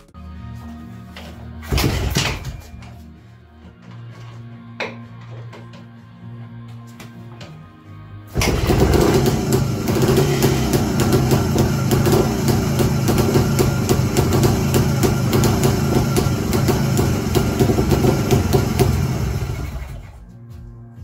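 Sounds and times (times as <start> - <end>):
two-stroke motorcycle engine running: 8.4 - 20.2.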